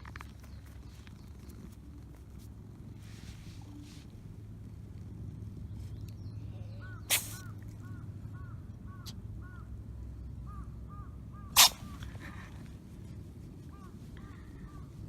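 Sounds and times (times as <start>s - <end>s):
bird calling: 6.2s - 9.7s, 10.4s - 12.4s
cat sneezing: 7.1s - 7.5s, 11.6s - 12.2s.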